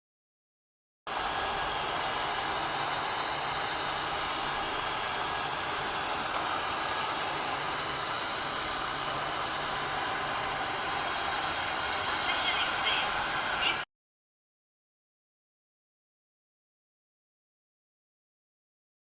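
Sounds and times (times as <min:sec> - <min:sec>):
robot vacuum motor whirring: 0:01.1 - 0:13.8.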